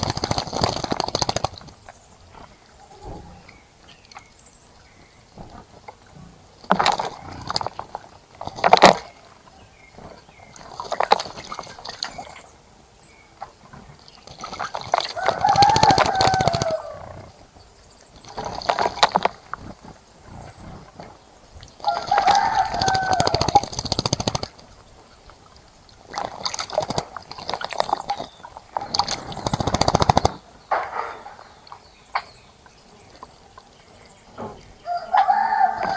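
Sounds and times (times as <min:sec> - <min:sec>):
birds splashing in bird bath: 0:00.0 - 0:35.9
rooster crowing: 0:15.2 - 0:17.1, 0:21.8 - 0:23.6, 0:34.8 - 0:35.9.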